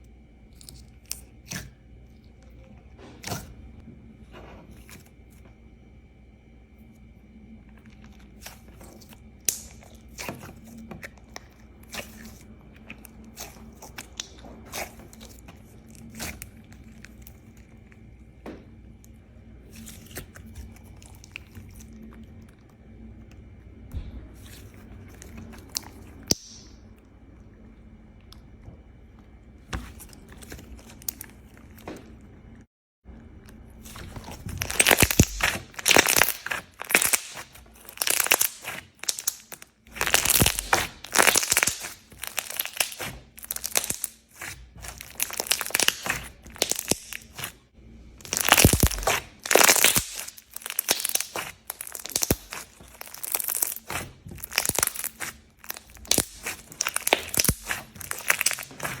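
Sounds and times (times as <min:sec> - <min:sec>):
slime crackling when squeezed: 0:33.9 - 0:47.5, 0:48.2 - 0:59.0.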